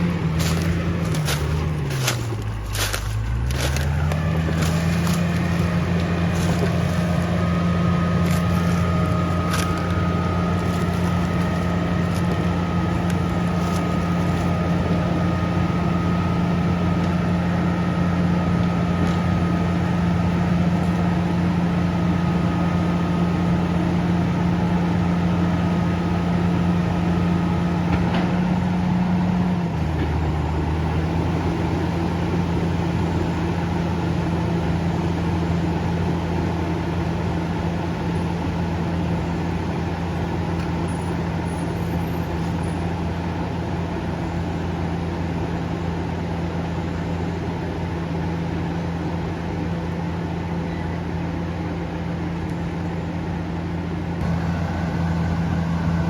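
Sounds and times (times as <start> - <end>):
steady whine: 0.0 - 23.7
bulldozer diesel engine at high revs: 0.0 - 56.0.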